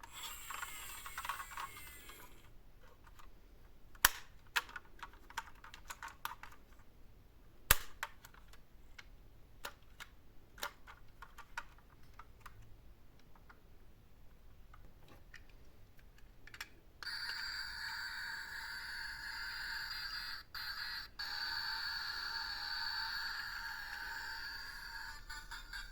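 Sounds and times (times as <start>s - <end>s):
plastic toy vehicles clicking: 0.0s - 3.3s, 4.0s - 6.6s, 7.7s - 13.6s, 15.3s - 25.9s
buzzy electronic toy tone: 17.0s - 25.9s.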